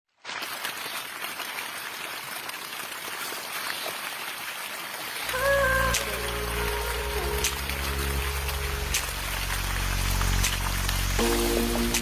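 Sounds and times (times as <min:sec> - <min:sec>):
water trickling and splashing: 0:00.1 - 0:12.0
music with deep bass: 0:05.8 - 0:12.0.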